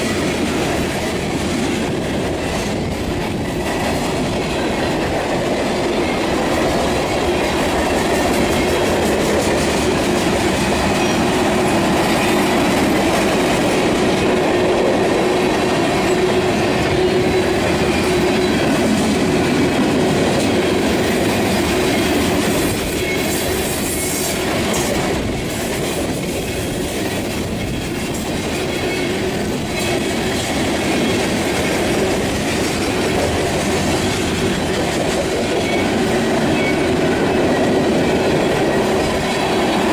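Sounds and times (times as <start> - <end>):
train wheels rolling on rails: 0.0 - 39.9.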